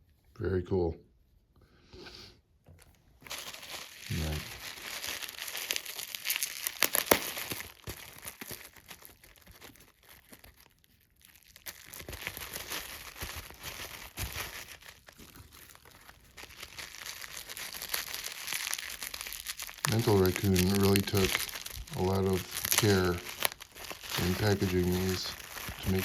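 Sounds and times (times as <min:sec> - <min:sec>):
wrapping crinkling and tearing: 0:02.7 - 0:26.0.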